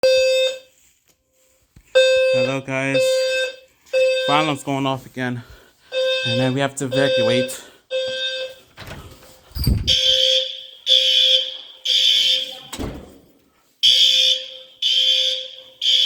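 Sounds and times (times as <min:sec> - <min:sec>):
fire alarm blasts: 0:00.0 - 0:00.8, 0:02.0 - 0:04.8, 0:05.9 - 0:08.7, 0:09.9 - 0:12.9, 0:13.8 - 0:16.0.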